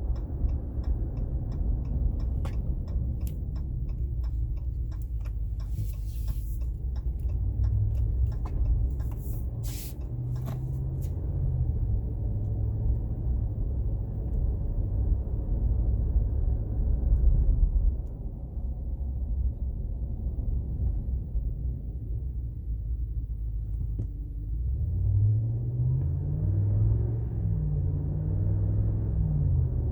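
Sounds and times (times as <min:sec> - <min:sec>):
light ticks: 0:00.0 - 0:11.2
driveline and road rumble: 0:00.0 - 0:29.9.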